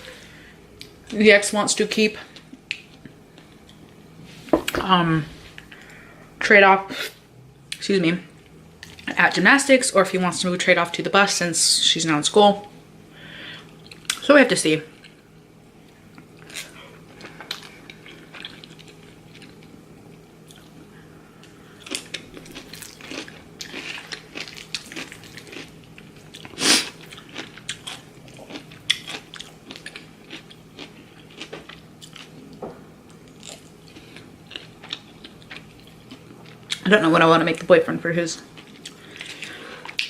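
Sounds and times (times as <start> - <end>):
person chewing and crunching: 8.8 - 9.2, 16.1 - 19.8, 20.4 - 36.9, 38.5 - 40.0.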